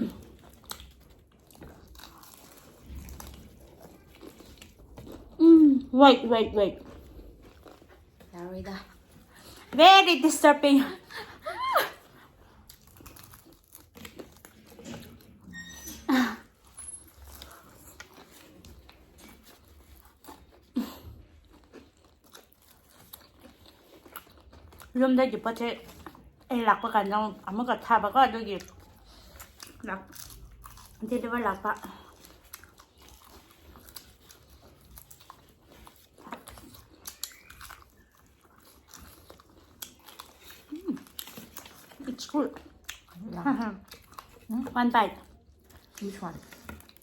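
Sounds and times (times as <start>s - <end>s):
chewing fried chicken: 0.0s - 47.0s
wet mouth clicks and smacks: 37.0s - 38.1s.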